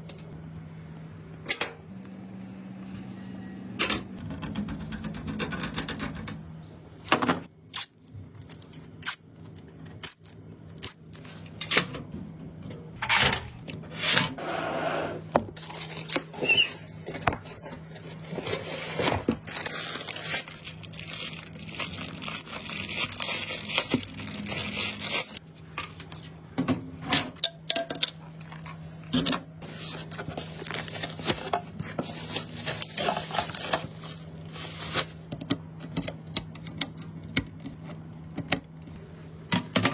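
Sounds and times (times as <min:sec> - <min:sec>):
packaging rustling: 0:17.5 - 0:25.4, 0:29.6 - 0:35.3.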